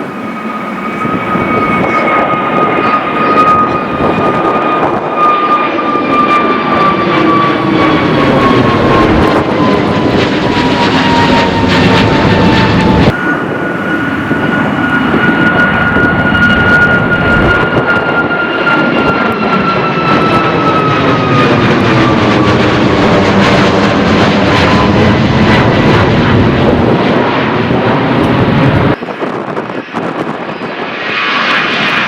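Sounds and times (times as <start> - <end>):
jet airliner taking off: 0.0 - 32.0.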